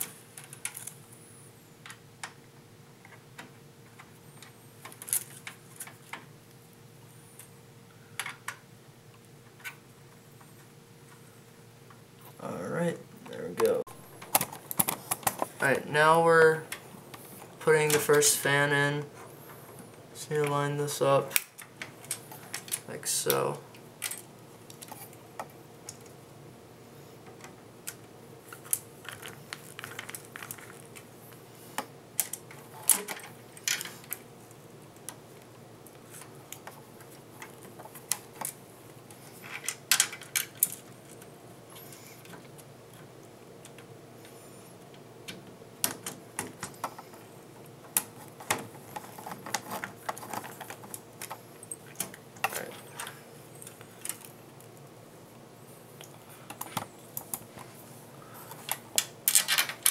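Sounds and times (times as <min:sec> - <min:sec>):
small clicks and rattles of handling: 0:00.0 - 0:01.0, 0:03.0 - 0:06.3, 0:21.3 - 0:26.2, 0:27.2 - 0:31.1, 0:31.8 - 0:34.3, 0:35.0 - 0:54.8, 0:58.5 - 0:59.9.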